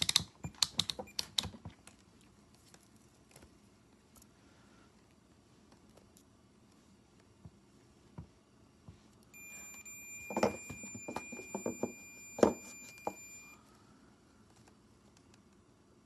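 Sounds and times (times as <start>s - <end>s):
high electronic beep: 9.4s - 13.6s.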